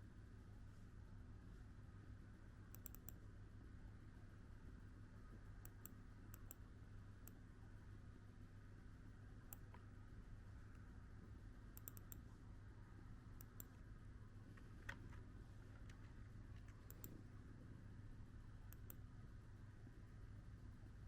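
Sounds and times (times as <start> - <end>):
low steady hum: 0.0 - 21.0
faint sharp clicks: 2.8 - 3.2, 11.8 - 12.2, 13.4 - 13.8, 15.8 - 17.2, 18.7 - 19.0.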